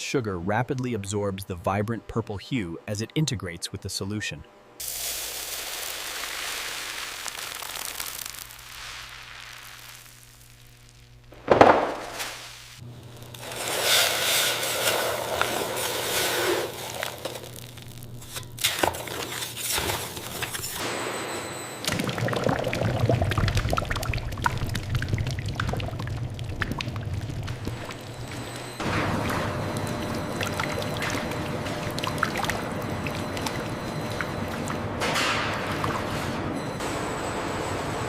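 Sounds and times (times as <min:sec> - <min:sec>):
liquid pouring and splashing: 0:04.8 - 0:10.2, 0:21.8 - 0:34.8.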